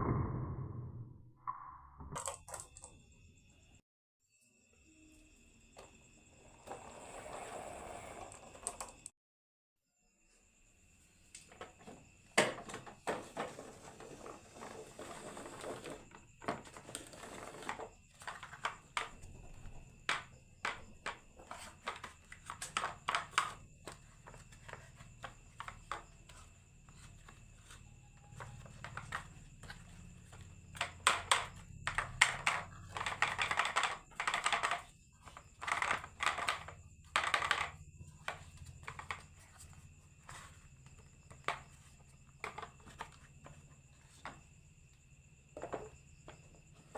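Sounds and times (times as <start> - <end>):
marbles clattering down wooden run: 35.6 - 37.8.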